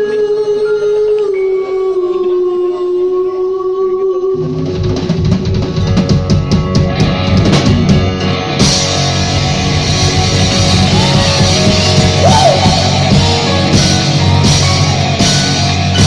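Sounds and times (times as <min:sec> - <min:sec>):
rock band playing: 0:04.4 - 0:16.0.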